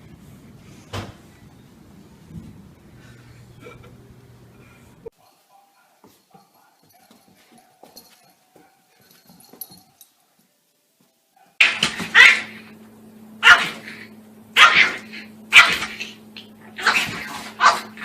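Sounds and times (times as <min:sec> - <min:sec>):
faint low hum: 0:00.0 - 0:18.0
dog barking: 0:05.1 - 0:09.2, 0:11.3 - 0:12.8, 0:13.4 - 0:18.0.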